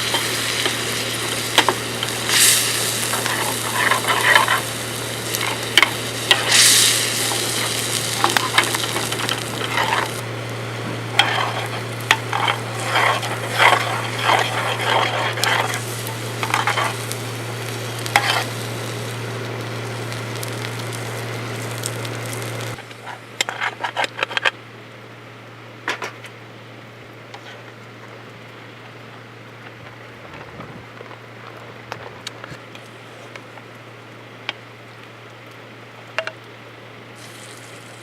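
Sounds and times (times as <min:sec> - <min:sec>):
food sizzling in a pan: 0:00.0 - 0:24.0, 0:37.1 - 0:38.0
utensil scraping and clinking pan: 0:11.0 - 0:17.0.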